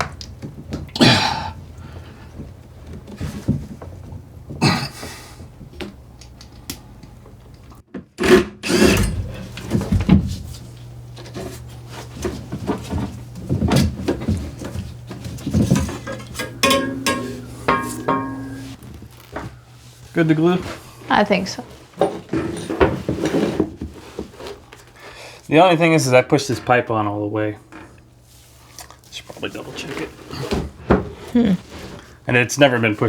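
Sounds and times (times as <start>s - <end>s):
steady low hum: 8.9s - 21.7s.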